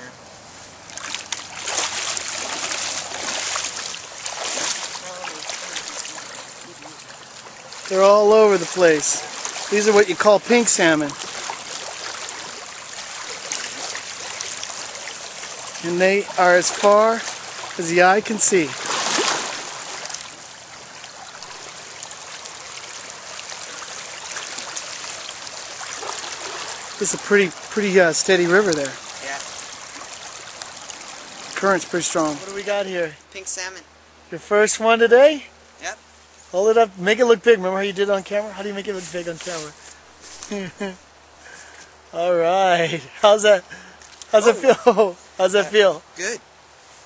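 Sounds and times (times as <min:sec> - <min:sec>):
river water rushing: 0:00.3 - 0:34.3
quick water splashes: 0:00.8 - 0:32.6.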